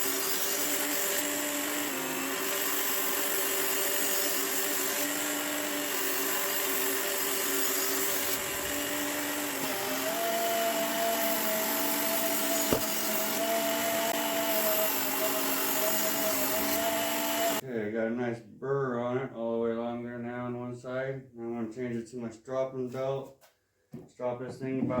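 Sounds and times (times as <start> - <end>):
belt grinder grinding steel blade: 0.0 - 17.6.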